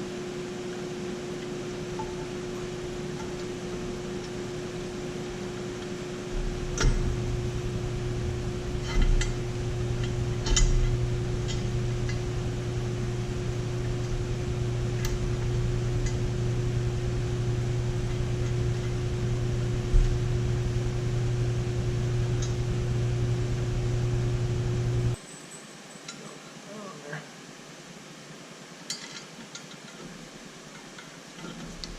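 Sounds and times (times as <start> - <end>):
steady mechanical hum: 0.0 - 31.9
sharp clicks and knocks: 5.8 - 7.2, 8.8 - 12.2.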